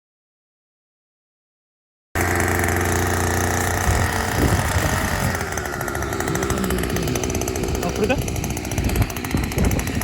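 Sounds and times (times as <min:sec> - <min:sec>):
small engine running: 0:02.2 - 0:10.0.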